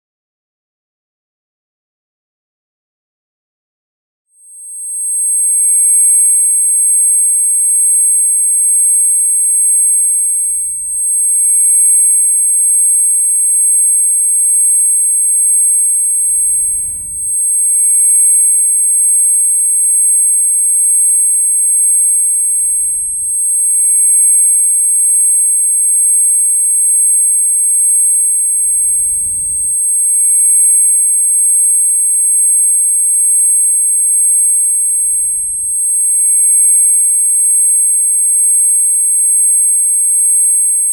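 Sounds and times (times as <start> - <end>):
high-pitched ringing tone: 4.4 - 40.9
weaker steady tones: 9.6 - 24.0, 25.5 - 32.3.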